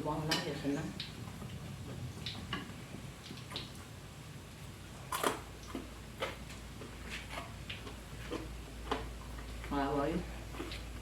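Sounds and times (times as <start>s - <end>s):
person chewing crispy food: 4.9s - 9.7s, 10.4s - 11.0s.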